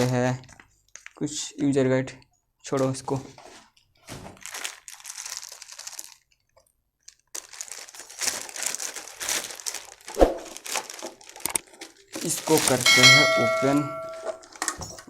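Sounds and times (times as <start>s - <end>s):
packaging crinkling: 0.0s - 1.3s, 4.1s - 14.6s.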